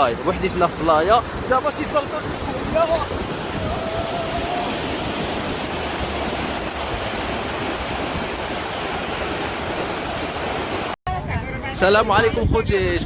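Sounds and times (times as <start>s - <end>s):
ocean surf on beach: 0.0s - 11.0s
wind on microphone: 0.3s - 13.0s.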